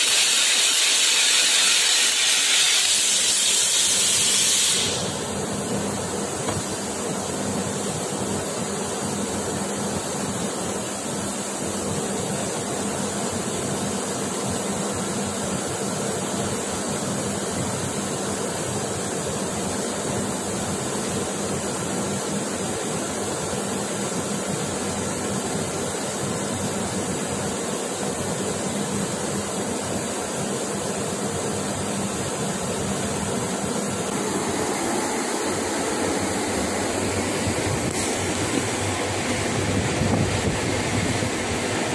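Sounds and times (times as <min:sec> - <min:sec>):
spray gun hissing: 0:00.0 - 0:09.2, 0:30.5 - 0:41.9.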